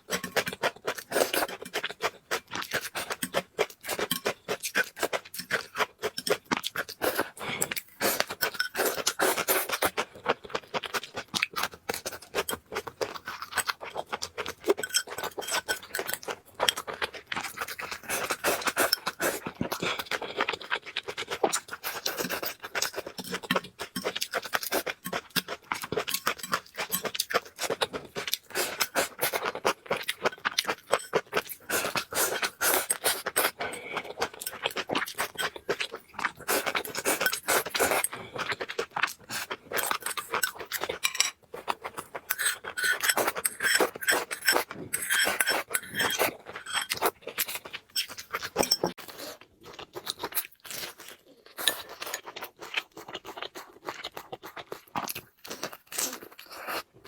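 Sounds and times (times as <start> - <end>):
person eating noodles: 0.0 - 56.8
utensils clinking against bowl: 3.0 - 4.4, 8.2 - 9.4, 14.7 - 16.3, 25.9 - 27.8, 30.0 - 33.5, 36.4 - 38.1, 39.8 - 41.4, 42.3 - 47.1, 48.0 - 49.0.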